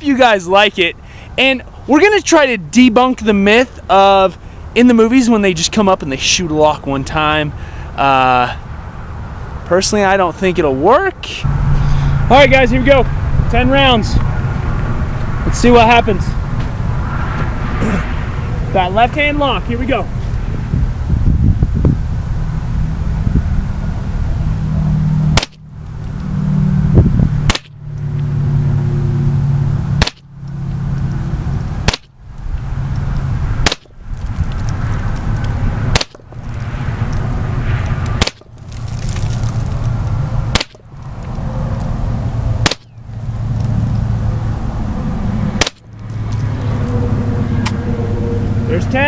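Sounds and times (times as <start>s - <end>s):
steady low rumble: 11.4s - 49.0s
rifle shots cracking: 27.5s - 27.7s, 33.6s - 33.9s, 38.2s - 38.5s.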